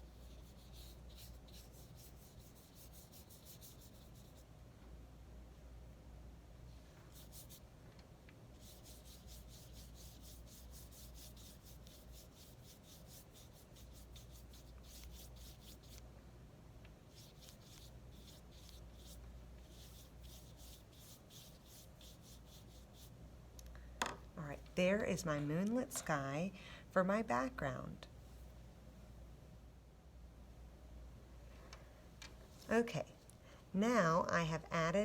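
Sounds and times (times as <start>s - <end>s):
paintbrush rubbing on paper: 0.0s - 4.5s, 7.0s - 7.6s, 8.5s - 16.0s, 17.1s - 23.1s.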